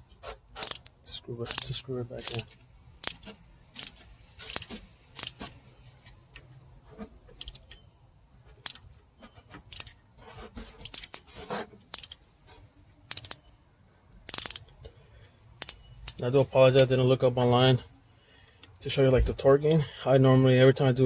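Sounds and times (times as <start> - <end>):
ratchet wrench clicking: 0.6 - 5.5, 7.4 - 7.7, 8.6 - 9.0, 9.7 - 10.0, 10.8 - 11.2, 11.9 - 12.2, 13.1 - 13.5, 14.2 - 14.7, 15.6 - 16.2.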